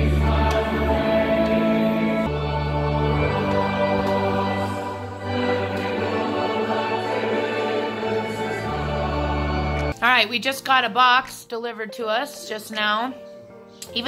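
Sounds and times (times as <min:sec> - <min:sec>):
choir singing: 0:00.0 - 0:10.0.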